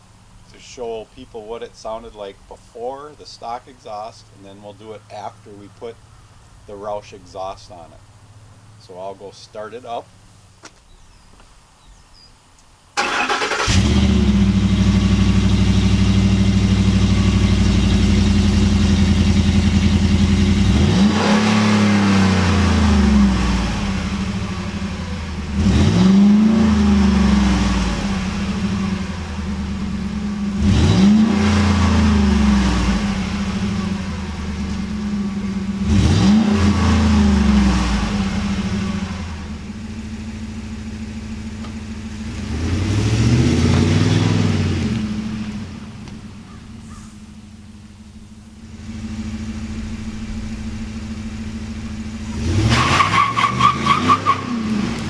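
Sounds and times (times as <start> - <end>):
engine starting: 13.0 - 14.4
engine idling: 13.0 - 20.8, 32.0 - 36.0, 36.8 - 42.6, 43.6 - 53.9
engine revving: 13.0 - 55.0.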